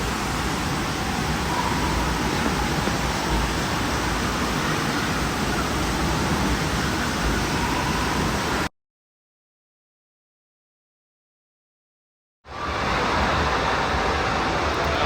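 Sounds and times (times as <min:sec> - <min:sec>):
echoing indoor waterpark din: 0:00.0 - 0:08.7, 0:12.5 - 0:15.0
rushing water: 0:00.0 - 0:08.7, 0:12.5 - 0:15.0.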